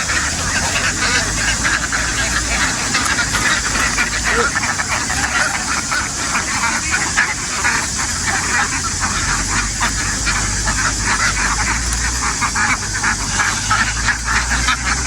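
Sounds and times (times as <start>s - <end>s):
ducks quacking: 0.0s - 15.0s
low steady hum: 0.0s - 15.0s.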